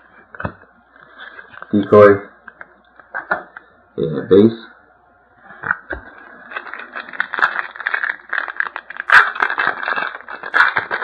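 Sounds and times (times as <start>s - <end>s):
foil wrapper and cards rustling: 6.1s - 11.0s.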